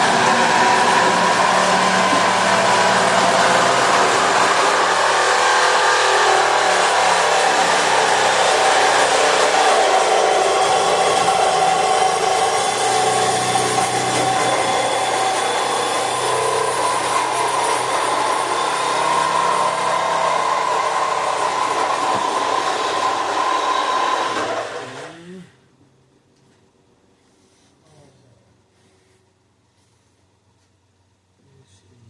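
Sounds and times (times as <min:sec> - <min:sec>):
machine motor with fan-like whine: 0:00.0 - 0:25.4.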